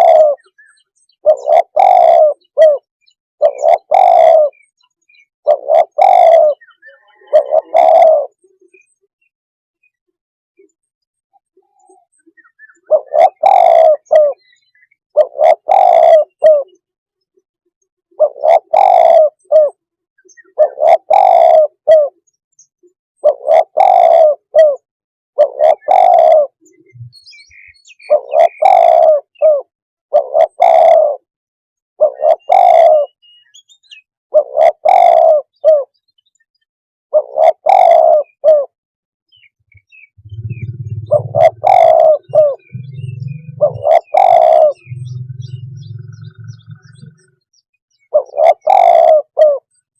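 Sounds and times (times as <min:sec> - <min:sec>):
dove cooing: 0:00.0 - 0:00.6, 0:01.2 - 0:04.6, 0:05.4 - 0:08.8, 0:11.8 - 0:14.5, 0:15.2 - 0:16.8, 0:18.2 - 0:22.2, 0:23.2 - 0:27.2, 0:28.0 - 0:31.3, 0:32.0 - 0:33.2, 0:34.3 - 0:35.9, 0:37.1 - 0:38.8, 0:40.2 - 0:49.7
low hum: 0:40.2 - 0:41.6, 0:42.6 - 0:43.9, 0:44.8 - 0:47.0.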